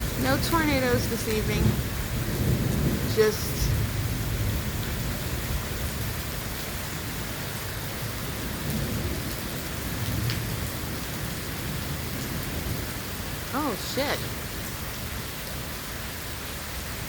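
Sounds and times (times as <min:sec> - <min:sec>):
low rumble of thunder: 0:00.0 - 0:13.5
steady rain falling: 0:00.0 - 0:17.0.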